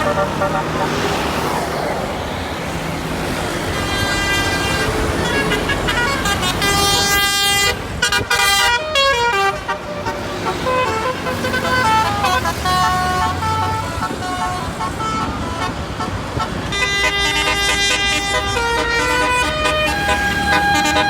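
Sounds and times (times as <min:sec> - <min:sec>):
multi-tone bus air horn tune: 0:00.0 - 0:01.2, 0:03.7 - 0:21.0
engine and traffic rumble: 0:00.0 - 0:21.0.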